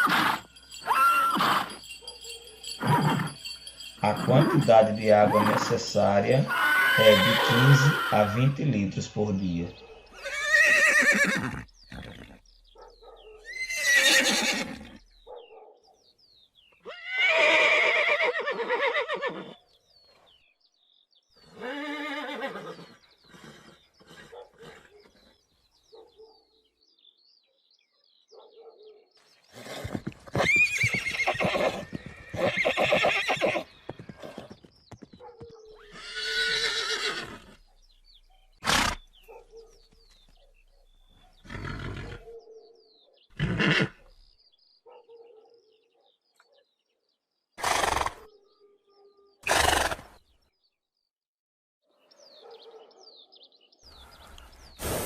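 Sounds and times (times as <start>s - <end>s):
horses neighing and whinnying: 0.0s - 2.0s, 2.6s - 8.6s, 10.1s - 12.6s, 13.4s - 15.1s, 16.8s - 19.6s, 21.4s - 25.4s, 29.5s - 34.7s, 35.8s - 37.6s, 38.6s - 39.1s, 41.4s - 42.3s, 43.3s - 44.1s, 47.6s - 48.3s, 49.4s - 50.2s.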